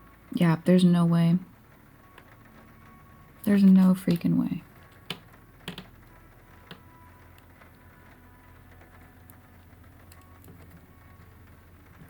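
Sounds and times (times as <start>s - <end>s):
plastic pieces clicking: 4.8s - 6.0s.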